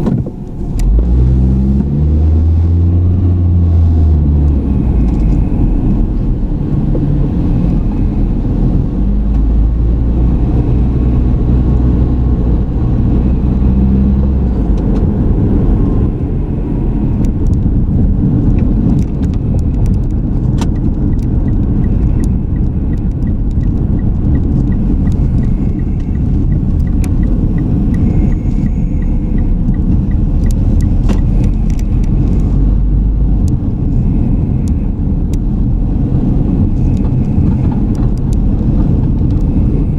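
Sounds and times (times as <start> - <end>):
car road and engine rumble: 0.0 - 39.9
faint even ticking: 20.7 - 32.2.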